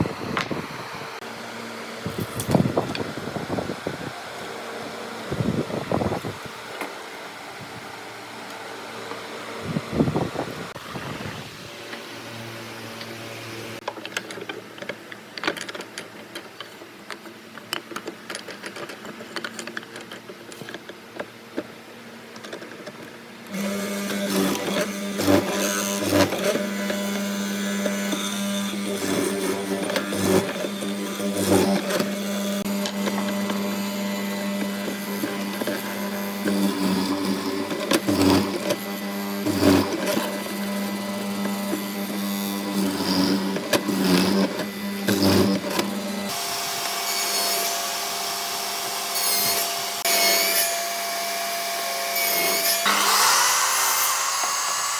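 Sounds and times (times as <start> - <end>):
small electric power tool motor: 0.0 - 13.8, 23.4 - 54.9
knocks of wood being worked: 13.8 - 54.9.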